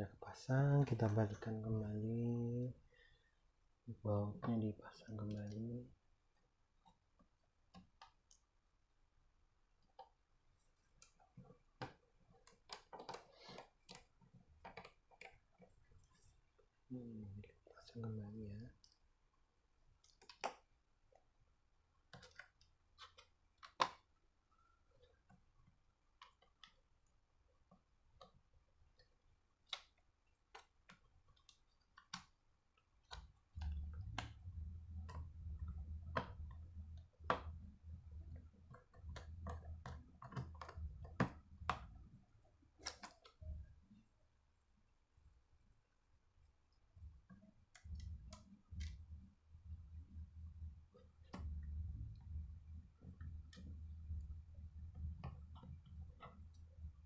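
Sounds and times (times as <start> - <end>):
low rumble: 33.6 - 39.8.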